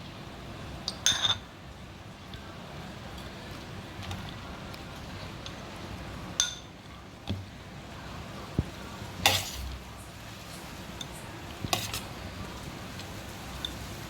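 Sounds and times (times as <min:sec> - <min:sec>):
utensils clinking against bowl: 0:00.9 - 0:01.4, 0:06.4 - 0:06.7, 0:09.2 - 0:09.7, 0:11.0 - 0:12.1.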